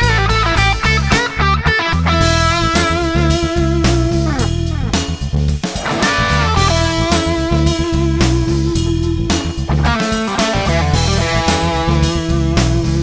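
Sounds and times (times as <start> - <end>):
bass guitar: 0.0 - 13.0
drums: 0.0 - 13.0
electric guitar lead with bends: 9.8 - 12.6.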